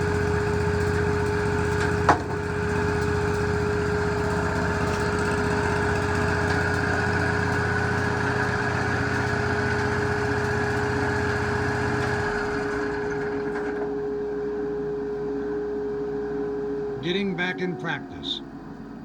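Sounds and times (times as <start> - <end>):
sawmill engine running: 0.0 - 14.9, 16.8 - 18.8
steady whine: 14.0 - 19.0.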